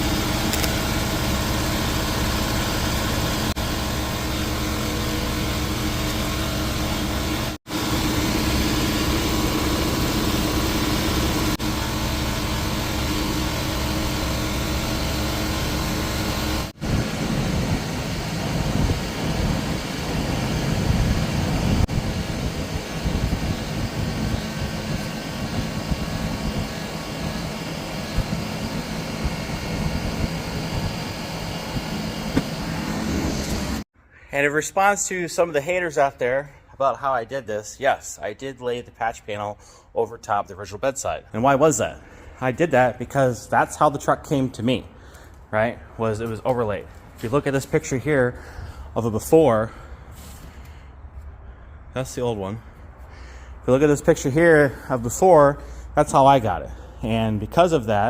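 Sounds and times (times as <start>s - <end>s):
engine-like mechanical rumble: 0.0s - 33.9s.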